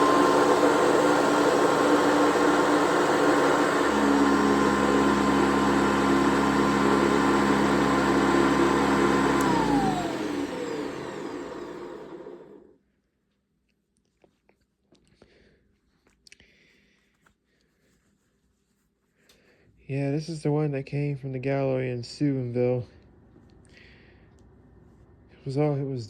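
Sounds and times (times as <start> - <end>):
vacuum cleaner motor whine: 0.0 - 12.7.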